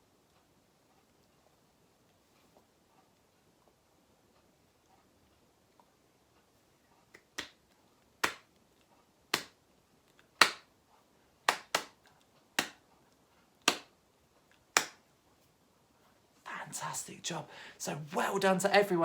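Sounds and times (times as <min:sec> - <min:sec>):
finger snaps: 0:08.2 - 0:08.5, 0:09.3 - 0:09.6, 0:10.4 - 0:10.7, 0:11.5 - 0:12.0, 0:12.6 - 0:12.8, 0:13.6 - 0:13.9, 0:14.8 - 0:15.0.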